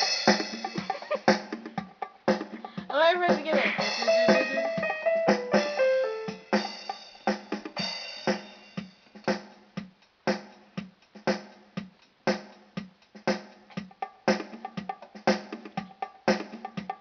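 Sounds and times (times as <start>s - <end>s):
keyboard drum rhythm: 0.0s - 17.0s
falling keyboard notes: 3.8s - 6.8s.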